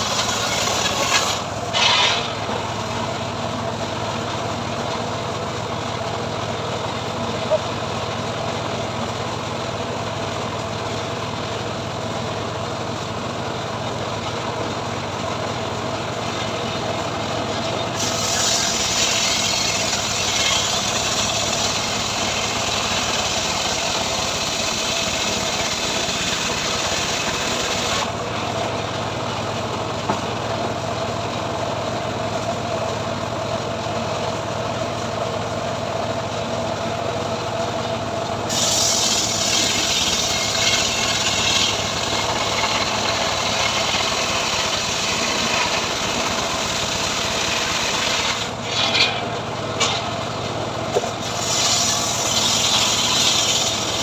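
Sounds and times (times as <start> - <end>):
saw cutting wood hiss: 0.0 - 3.0, 17.8 - 28.2, 38.5 - 50.2, 50.9 - 54.0
engine running steadily: 0.0 - 54.0.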